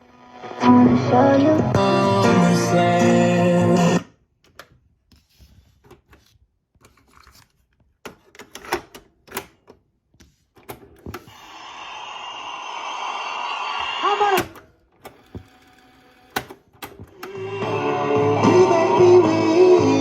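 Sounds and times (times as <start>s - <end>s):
music from a boombox: 0.0s - 4.1s, 17.2s - 20.0s
sharp mechanical clicks and clunks: 16.3s - 17.4s.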